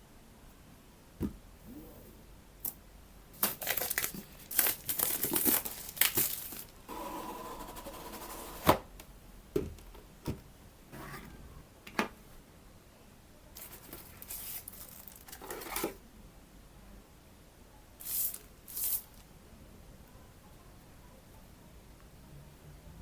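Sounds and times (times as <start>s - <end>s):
packaging crinkling and tearing: 3.4s - 6.8s.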